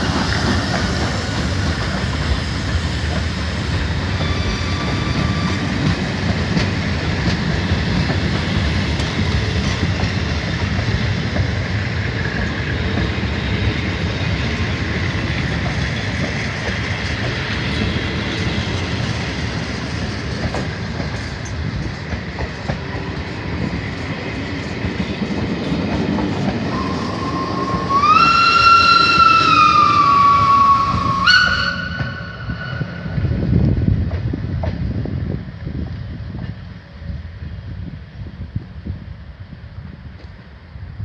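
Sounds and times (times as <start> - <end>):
train rumbling on rails: 0.0 - 41.0
train horn blast: 26.7 - 33.2.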